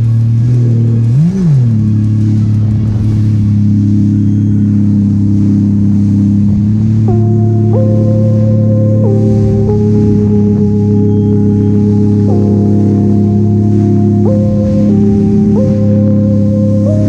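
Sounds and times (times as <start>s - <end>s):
watercraft engine idling: 0.0s - 17.0s.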